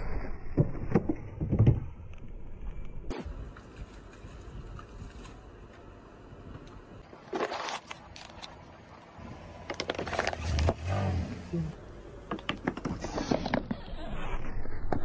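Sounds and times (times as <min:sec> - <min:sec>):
car low rumble: 0:00.0 - 0:07.1, 0:08.6 - 0:15.0
objects crackling under a tyre: 0:00.0 - 0:08.7, 0:09.6 - 0:11.0.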